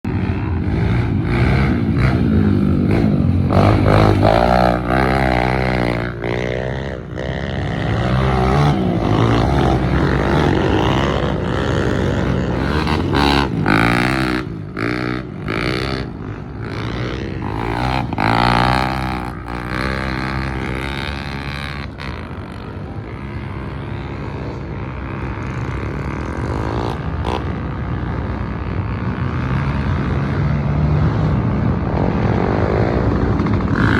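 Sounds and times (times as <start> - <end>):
vehicle engine revving: 0.1 - 33.9.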